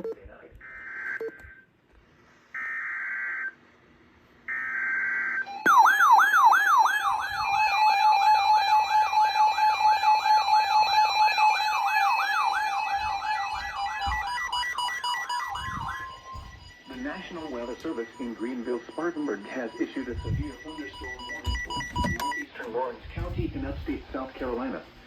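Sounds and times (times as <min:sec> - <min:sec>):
steady alarm tone: 0:02.4 - 0:03.8, 0:04.4 - 0:22.6
warbling alert siren: 0:02.5 - 0:03.7, 0:04.4 - 0:22.5
buzzing digital header tones: 0:06.8 - 0:22.5.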